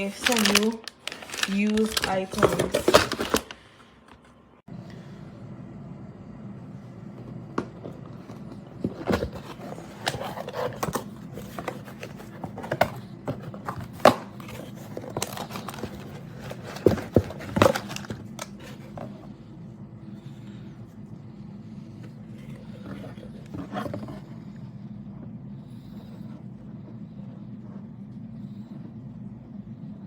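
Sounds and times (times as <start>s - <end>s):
packaging rustling: 0.0s - 3.8s, 8.8s - 19.1s.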